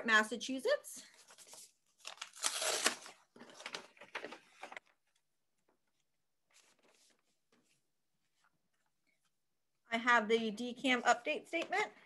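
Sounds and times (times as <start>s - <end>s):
papers rustling: 1.2s - 9.3s.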